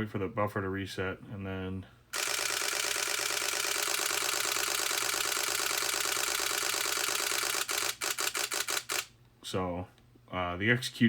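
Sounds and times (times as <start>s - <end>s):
camera shutter burst: 2.1s - 9.1s.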